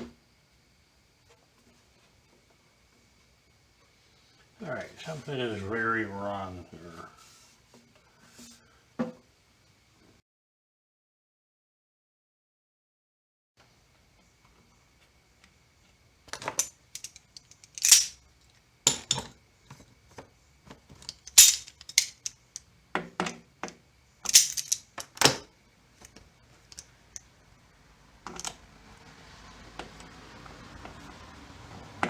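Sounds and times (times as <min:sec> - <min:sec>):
faint steady hiss: 0:00.0 - 0:10.2
metal hardware clinking: 0:16.5 - 0:18.2, 0:21.0 - 0:22.5, 0:24.2 - 0:24.9.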